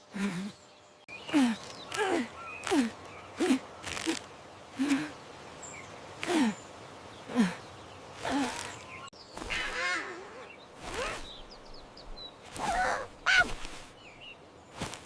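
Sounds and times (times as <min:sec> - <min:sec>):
short animal calls: 0:12.6 - 0:13.6.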